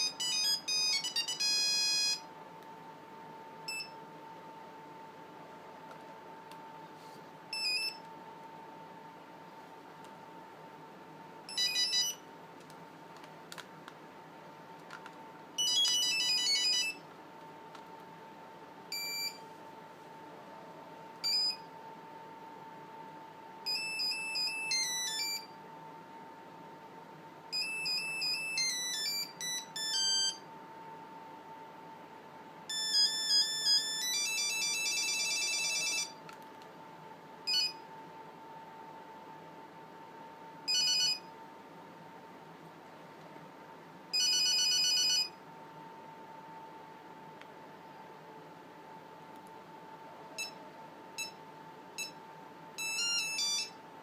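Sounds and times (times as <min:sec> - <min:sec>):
mobile phone beeping tones: 0:00.0 - 0:02.3, 0:03.7 - 0:04.0, 0:07.6 - 0:08.0, 0:11.5 - 0:12.2, 0:15.6 - 0:17.0, 0:18.9 - 0:19.4, 0:21.2 - 0:21.6, 0:23.7 - 0:25.5, 0:27.5 - 0:30.4, 0:32.7 - 0:36.2, 0:37.5 - 0:37.8, 0:40.7 - 0:41.3, 0:44.2 - 0:45.4, 0:50.4 - 0:50.6, 0:52.8 - 0:53.8.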